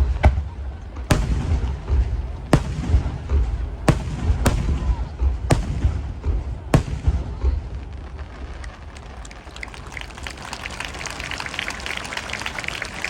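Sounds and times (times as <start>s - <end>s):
firework bang: 0.0s - 9.2s
low rumbling booms: 0.0s - 9.2s
firework crackle: 0.0s - 13.0s.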